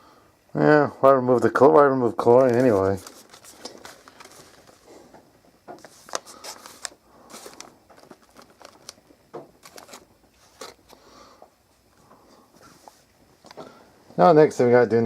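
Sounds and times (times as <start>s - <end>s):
packaging crinkling: 2.2s - 11.0s.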